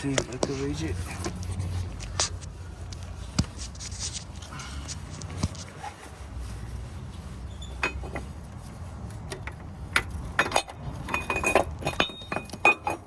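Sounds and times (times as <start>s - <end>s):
metal bracket clinking and knocking: 10.0s - 13.0s.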